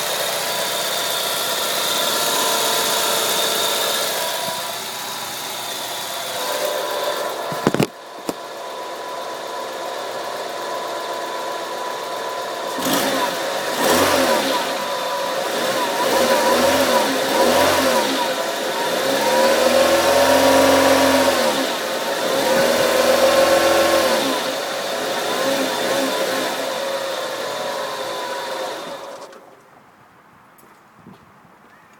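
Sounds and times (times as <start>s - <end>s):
car engine revving: 0.0s - 7.9s, 12.6s - 29.3s.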